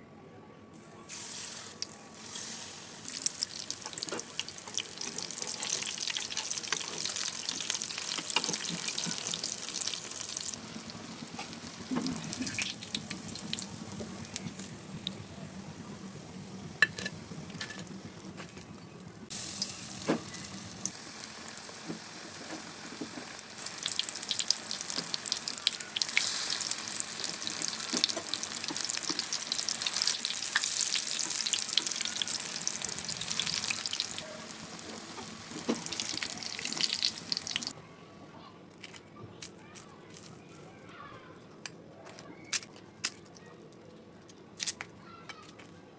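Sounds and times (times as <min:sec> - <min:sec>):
fritters deep-frying in hot oil: 0:01.2 - 0:15.4, 0:19.3 - 0:37.8.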